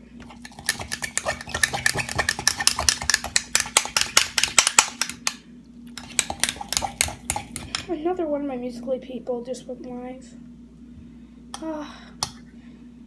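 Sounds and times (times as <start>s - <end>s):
utensil clinking against bowl: 0.2s - 5.4s, 6.0s - 7.9s.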